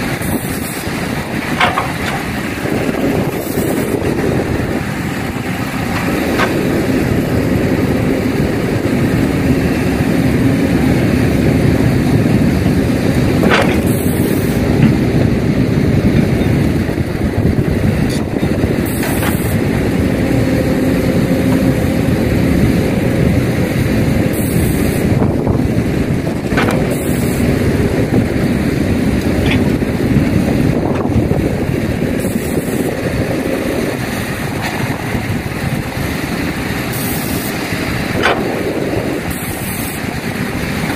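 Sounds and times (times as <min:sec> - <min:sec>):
excavator diesel engine running: 0:00.0 - 0:40.9.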